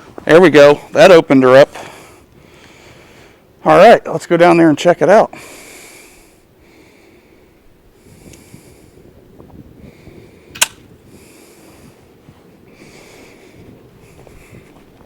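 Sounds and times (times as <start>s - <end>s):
person breathing heavily: 1.7s - 3.5s, 5.3s - 9.2s, 9.8s - 14.9s
sharp loud click: 10.5s - 10.9s.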